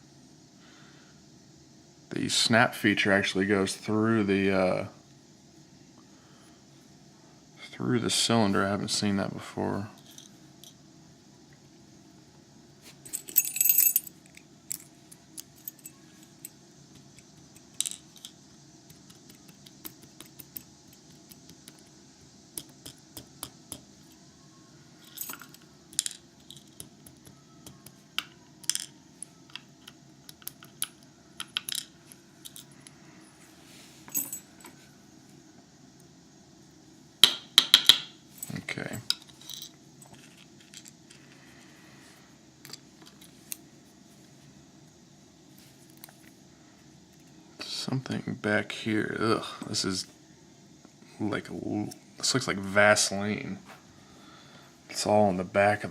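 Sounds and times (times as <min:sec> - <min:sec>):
faint steady hum: 0:00.0 - 0:55.9
small metal parts clicking: 0:25.0 - 0:32.8.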